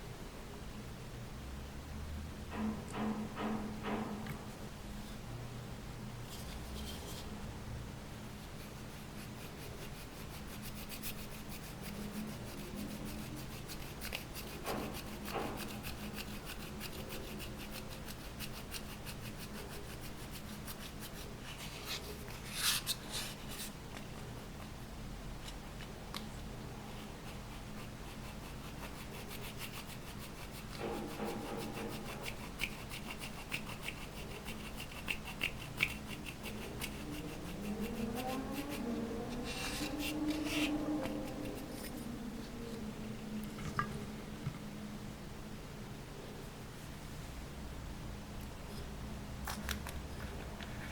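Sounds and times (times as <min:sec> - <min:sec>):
slime rubbing and scraping: 0:26.9 - 0:42.6.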